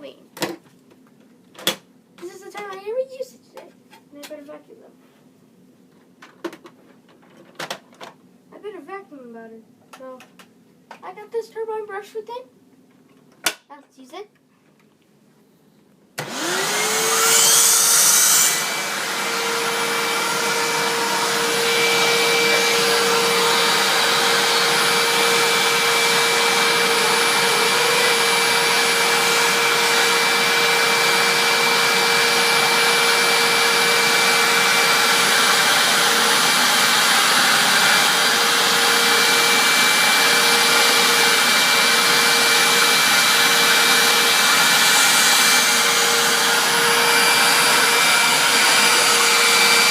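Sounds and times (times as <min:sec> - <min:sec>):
vacuum cleaner motor whining: 0:16.2 - 0:49.9.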